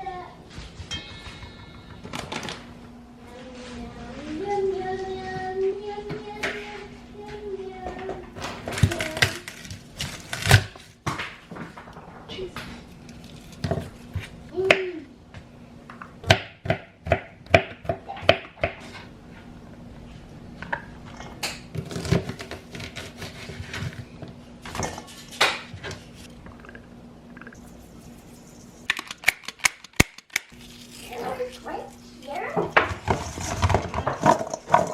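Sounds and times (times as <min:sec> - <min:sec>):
faint steady hum: 0:00.0 - 0:34.9
dishes and utensils clinking: 0:00.8 - 0:02.8.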